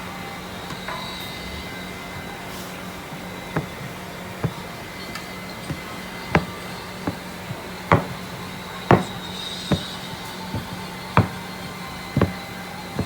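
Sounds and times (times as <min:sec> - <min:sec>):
knocks on a work surface: 0:07.9 - 0:08.2, 0:08.9 - 0:09.9.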